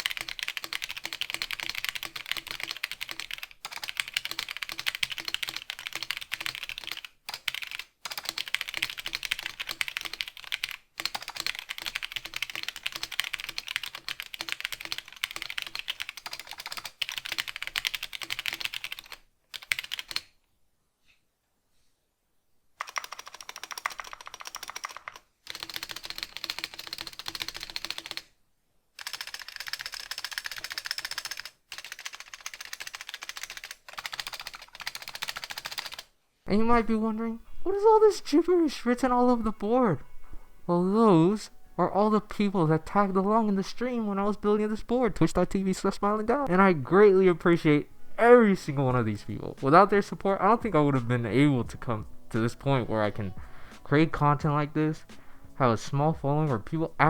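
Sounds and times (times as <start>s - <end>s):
fast typing on mechanical keyboard: 0.0s - 20.3s, 22.8s - 28.3s, 29.0s - 36.1s.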